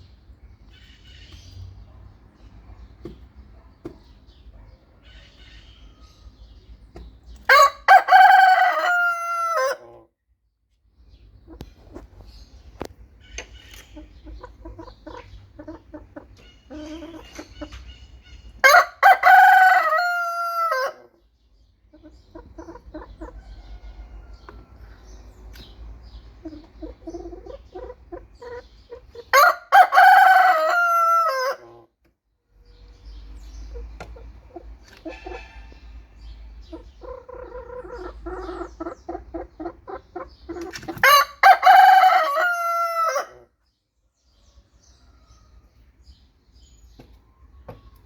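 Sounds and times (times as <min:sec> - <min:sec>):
chickens clucking: 0:00.0 - 0:10.1, 0:11.0 - 0:21.2, 0:21.8 - 0:32.1, 0:32.8 - 0:43.5, 0:44.4 - 0:48.0
rooster crowing: 0:07.5 - 0:09.8, 0:18.6 - 0:21.1, 0:29.3 - 0:31.6, 0:41.0 - 0:43.5.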